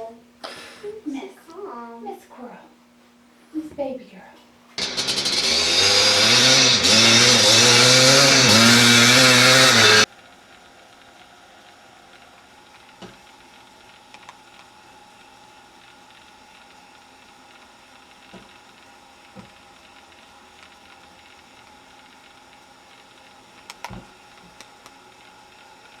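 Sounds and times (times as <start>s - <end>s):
faint room hum: 0.0s - 4.8s, 10.0s - 26.0s.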